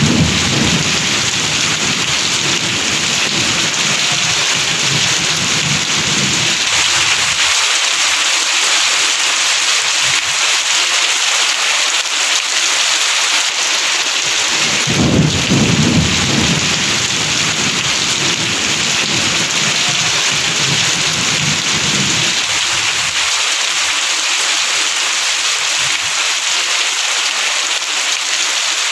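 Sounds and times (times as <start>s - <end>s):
thunder rumbling: 0.0s - 7.7s, 14.3s - 23.4s
heavy rain hissing: 0.0s - 28.9s.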